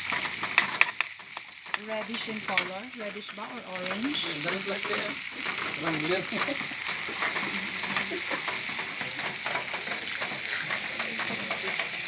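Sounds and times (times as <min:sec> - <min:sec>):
shrimp sizzling in a pan: 0:00.0 - 0:12.0.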